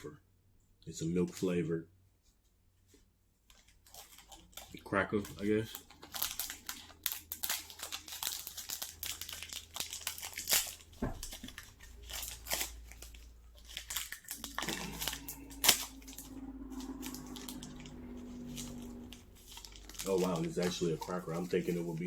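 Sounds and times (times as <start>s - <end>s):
plastic wrapper crinkling and tearing: 3.5s - 22.0s.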